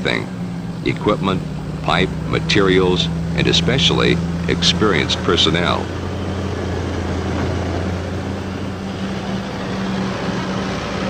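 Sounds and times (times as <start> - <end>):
heavy engine droning: 0.0 - 11.0.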